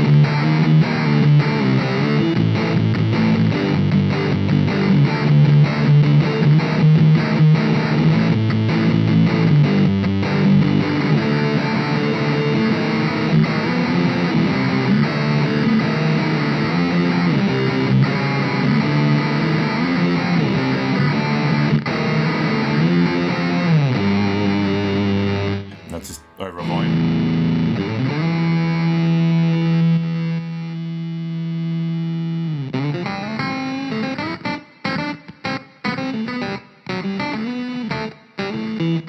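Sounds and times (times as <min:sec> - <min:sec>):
distorted electric guitar: 0:25.7 - 0:39.0.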